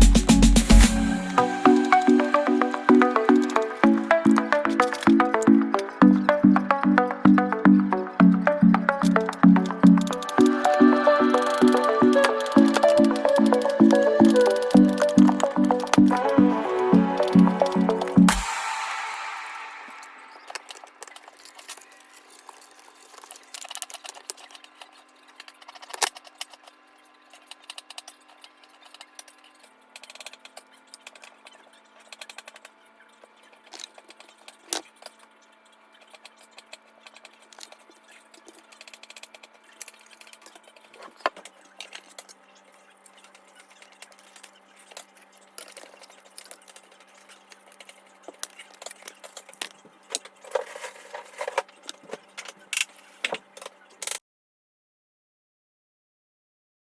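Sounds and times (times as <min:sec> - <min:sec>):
plastic parts clicking and rattling: 0:20.4 - 0:35.3, 0:35.9 - 0:54.2.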